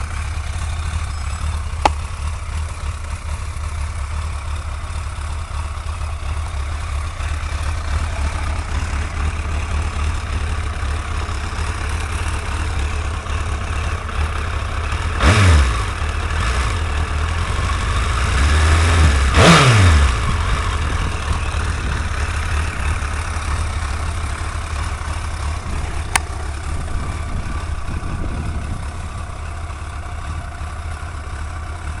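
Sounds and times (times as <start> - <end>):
motorcycle engine idling and revving: 0.0 - 32.0
sharp click: 26.1 - 26.3.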